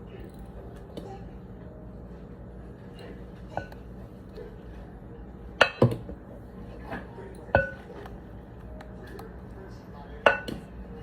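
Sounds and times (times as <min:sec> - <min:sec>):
kitchenware clinking and knocking: 0:05.6 - 0:06.2.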